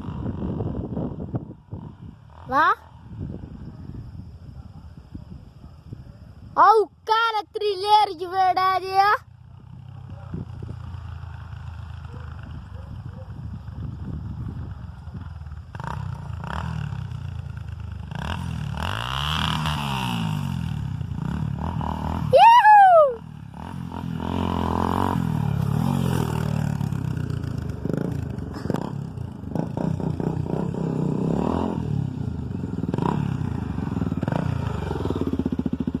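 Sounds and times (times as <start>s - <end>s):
motorcycle engine revving: 0.0s - 6.6s, 7.8s - 36.0s.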